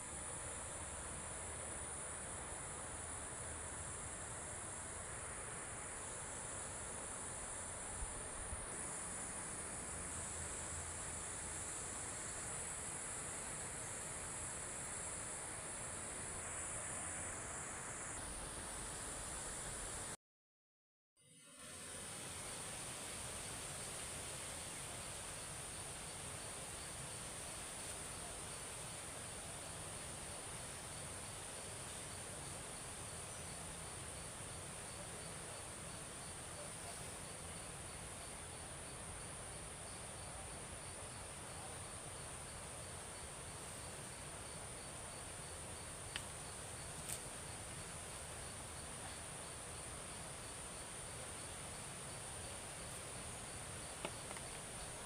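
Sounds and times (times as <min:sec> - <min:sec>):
insects chorus: 0:00.0 - 0:20.2, 0:21.3 - 0:55.0.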